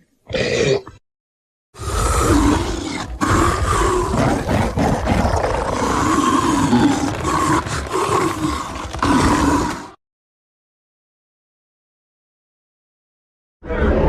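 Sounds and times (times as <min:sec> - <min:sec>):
monster growling roar: 0:01.8 - 0:10.0, 0:13.6 - 0:14.0.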